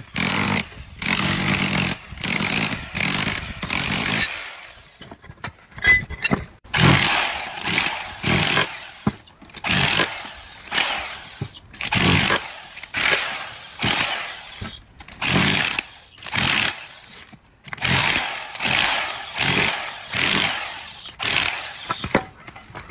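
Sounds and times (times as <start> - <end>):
power drill bursts: 6.8 - 17.2, 17.8 - 22.2.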